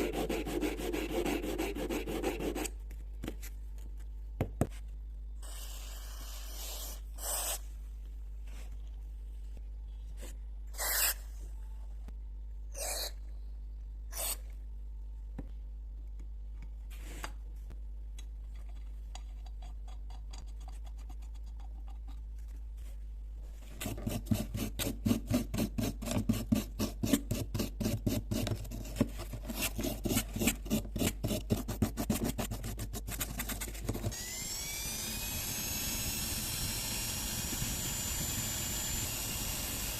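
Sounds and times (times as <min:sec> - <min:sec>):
filing metal: 0:00.0 - 0:02.7, 0:23.8 - 0:28.6.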